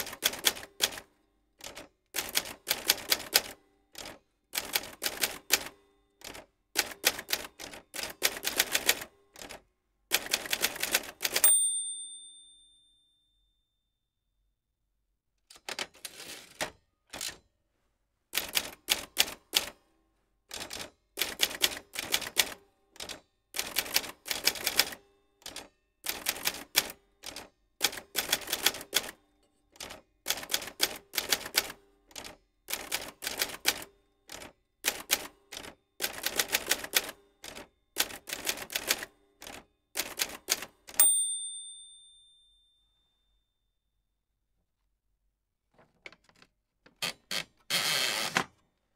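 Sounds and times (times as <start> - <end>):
typewriter bell ringing: 11.2 - 13.3, 40.9 - 42.9.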